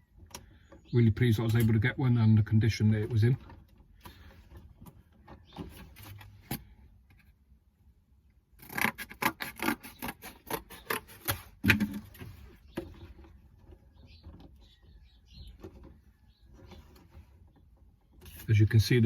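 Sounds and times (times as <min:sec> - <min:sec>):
clicks rubbing and scraping: 0:02.9 - 0:07.4, 0:08.6 - 0:18.7.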